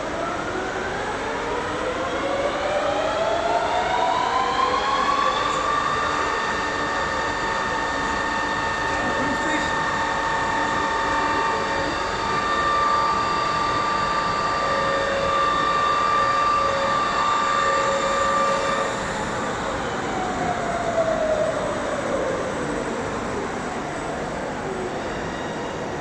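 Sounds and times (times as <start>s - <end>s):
high whining tones: 4.2s - 21.8s.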